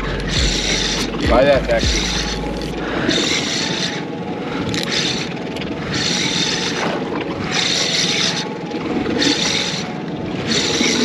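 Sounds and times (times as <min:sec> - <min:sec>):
boat motor hum: 0:00.0 - 0:11.0
wind: 0:00.0 - 0:11.0.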